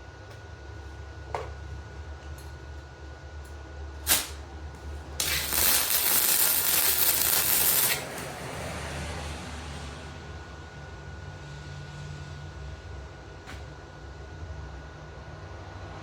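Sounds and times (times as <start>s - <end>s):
welder crackling sizzle: 4.0s - 8.3s
sharp crack: 4.1s - 4.4s, 5.2s - 8.3s.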